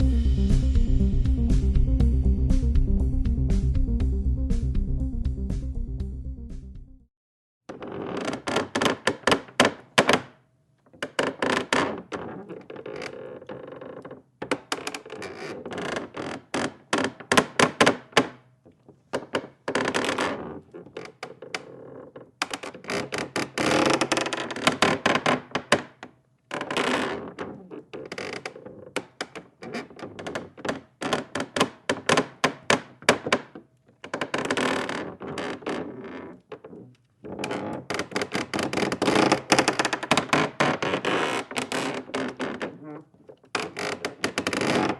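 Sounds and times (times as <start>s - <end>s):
wood creaking: 7.7s - 44.9s.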